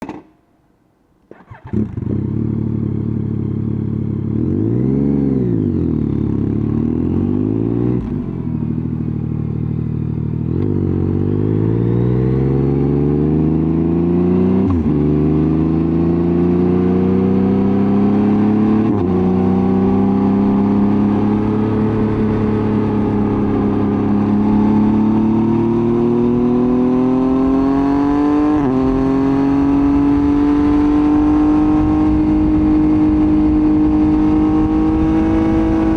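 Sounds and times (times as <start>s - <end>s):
motorcycle engine revving: 1.3s - 35.9s.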